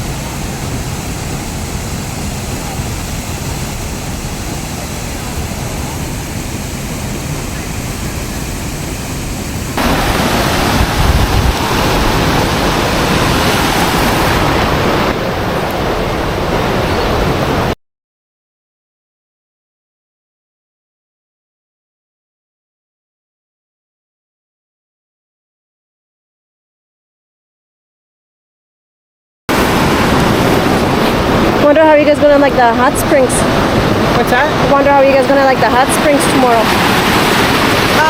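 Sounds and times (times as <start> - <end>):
waterfall rushing: 0.0 - 17.8, 29.5 - 38.0.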